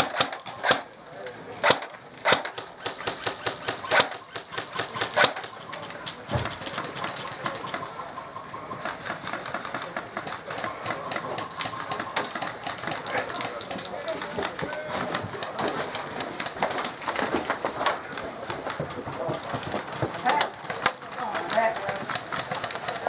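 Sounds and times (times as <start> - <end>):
airsoft gun shots: 0.0 - 0.9, 1.6 - 5.6.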